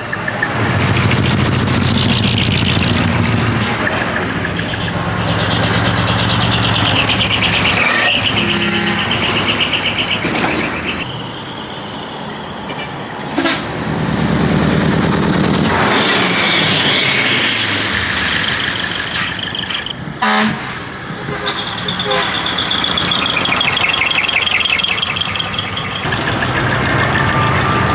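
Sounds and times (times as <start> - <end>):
truck engines running: 0.0 - 27.9
truck horns held tones: 4.7 - 11.6, 19.1 - 24.8.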